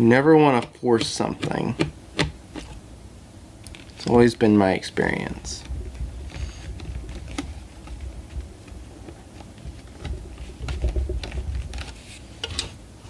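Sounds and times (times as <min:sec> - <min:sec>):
low handling bumps: 0:05.4 - 0:12.1.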